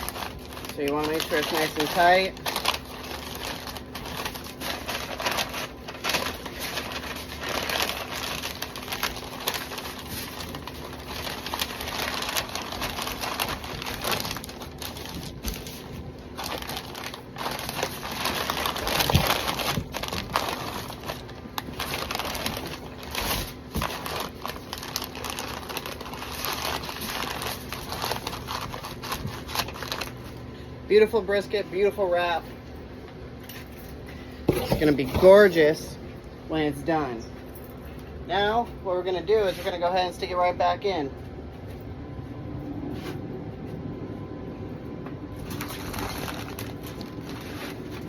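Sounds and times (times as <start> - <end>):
wrapping crinkling: 0.0 - 32.5, 45.4 - 48.0.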